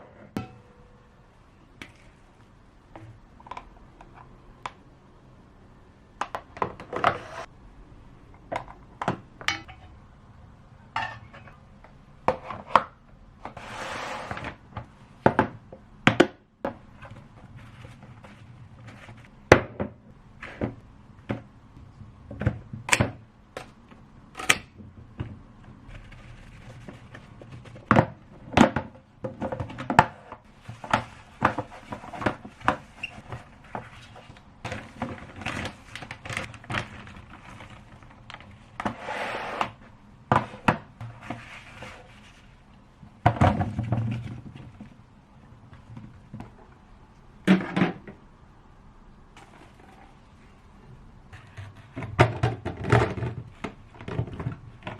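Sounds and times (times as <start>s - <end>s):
knocks and clunks of objects handled: 14.4s - 39.0s, 40.3s - 46.8s, 51.3s - 54.9s.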